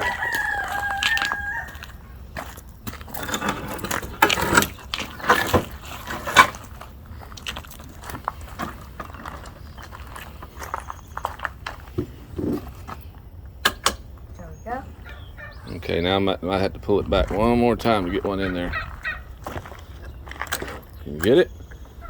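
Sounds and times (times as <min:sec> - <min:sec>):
rooster crowing: 0:00.0 - 0:02.1.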